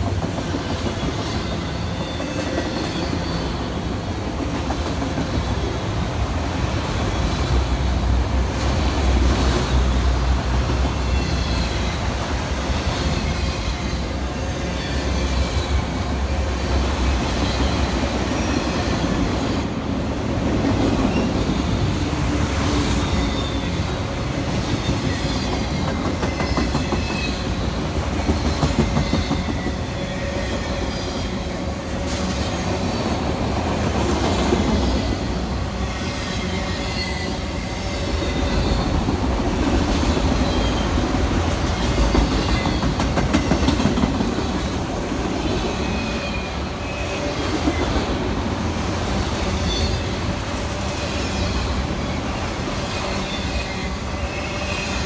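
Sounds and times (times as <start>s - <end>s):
train wheels rolling on rails: 0.0s - 55.0s
high wheel squeals: 44.5s - 55.0s.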